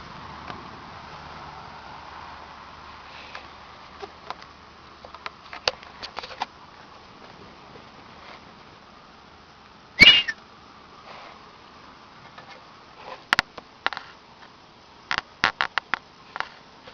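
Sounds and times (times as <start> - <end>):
cow sneezing: 10.0 - 10.4.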